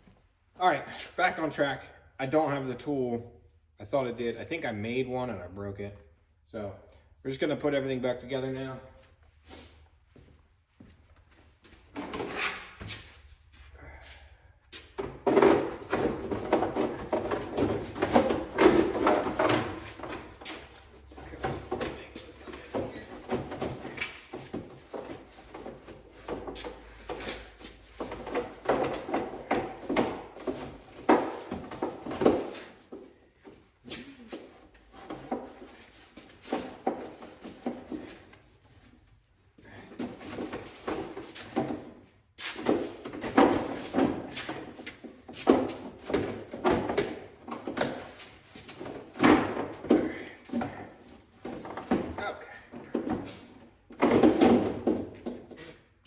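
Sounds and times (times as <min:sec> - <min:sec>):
hand tools and metal parts clanking: 0:14.9 - 0:33.0.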